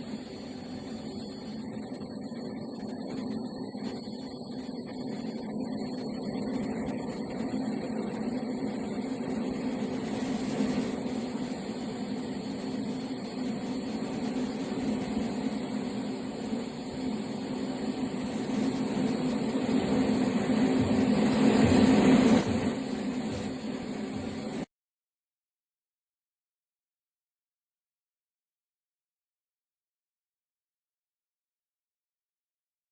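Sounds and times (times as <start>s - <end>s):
welding arc buzzing and hissing: 0.0s - 24.7s.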